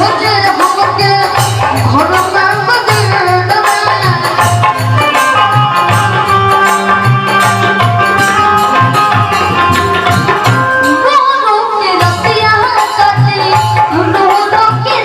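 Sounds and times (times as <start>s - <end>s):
hand drum beat: 0.0s - 11.2s
long held instrument notes: 5.4s - 11.6s.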